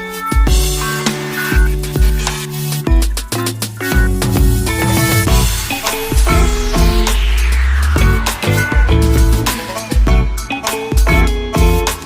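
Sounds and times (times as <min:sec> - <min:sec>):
bass kick beat: 0:03.9 - 0:10.4
sustained synth notes: 0:04.1 - 0:10.2.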